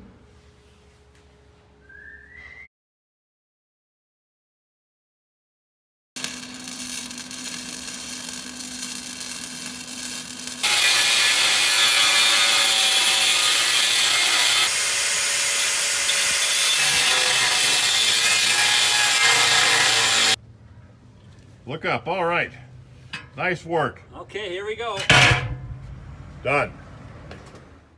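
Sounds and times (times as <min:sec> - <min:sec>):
saw cutting through wood: 0:06.2 - 0:20.4.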